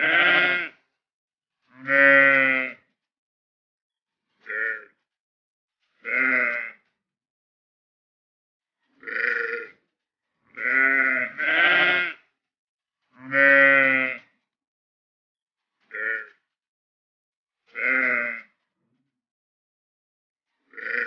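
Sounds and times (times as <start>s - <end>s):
sheep bleating: 0.0s - 0.8s, 1.7s - 2.8s, 4.4s - 5.0s, 6.0s - 6.9s, 9.0s - 9.8s, 10.5s - 12.3s, 13.2s - 14.3s, 15.9s - 16.4s, 17.7s - 18.6s, 20.7s - 21.0s.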